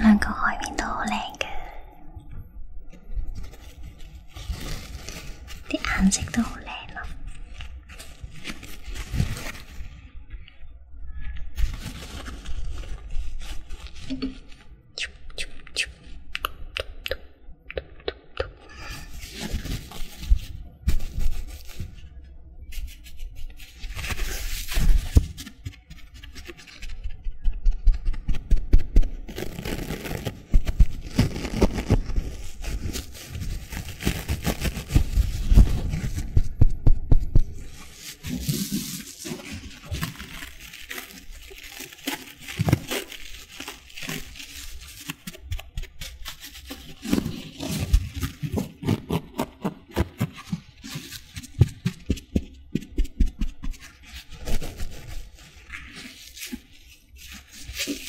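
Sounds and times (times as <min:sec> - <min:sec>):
sponges squeezed and rubbed: 0:29.3 - 0:36.2, 0:37.6 - 0:58.0.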